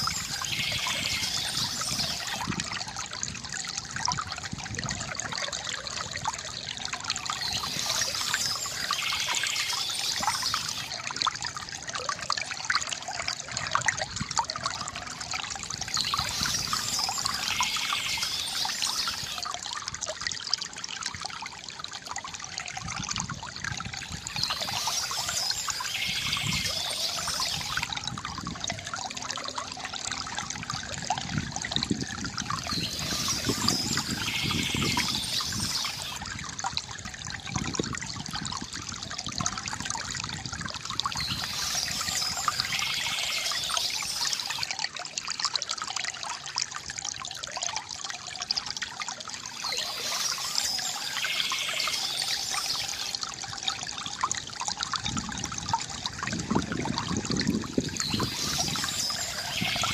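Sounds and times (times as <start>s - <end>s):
birds chirping: 0.0s - 2.4s, 7.2s - 10.9s, 15.8s - 19.4s, 24.2s - 27.9s, 32.6s - 36.2s, 41.1s - 44.7s, 49.5s - 53.1s, 57.9s - 59.9s
water trickling from fountain: 0.0s - 59.9s.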